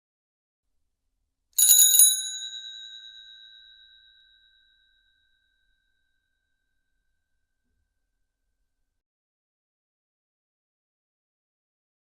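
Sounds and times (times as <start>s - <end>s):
bicycle bell ringing: 1.6s - 5.1s.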